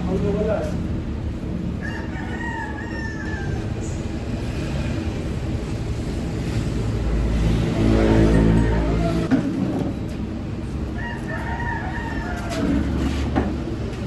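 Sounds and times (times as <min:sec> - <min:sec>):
rooster crowing: 0:01.8 - 0:04.0, 0:11.0 - 0:13.0.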